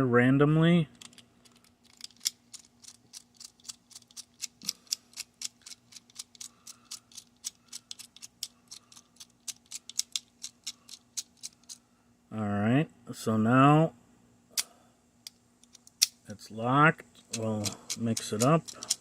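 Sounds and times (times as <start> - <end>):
padlock wheels clicking: 0.9 - 11.8, 17.2 - 19.0.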